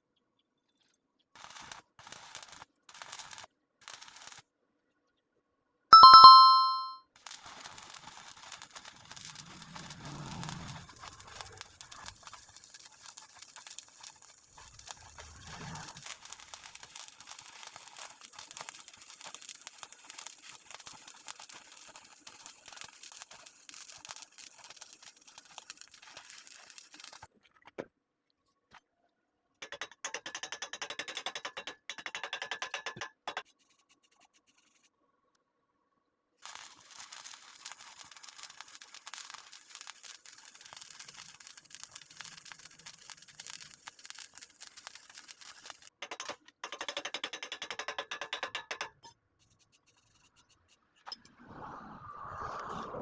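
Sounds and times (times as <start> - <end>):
welding arc crackling: 1.4 - 4.4, 7.3 - 27.3, 36.4 - 45.9.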